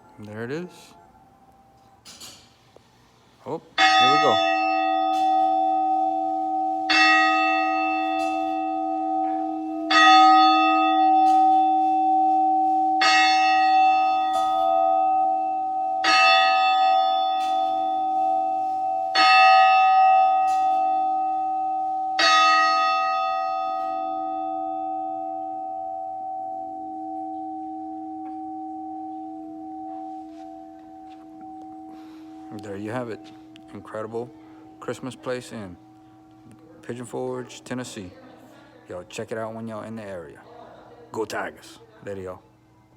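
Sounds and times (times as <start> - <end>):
grandfather clock striking: 3.8 - 38.0.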